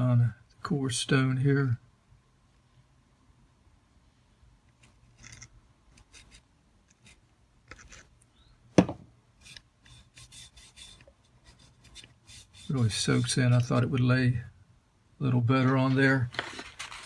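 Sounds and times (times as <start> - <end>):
light rubbing: 9.4 - 14.0.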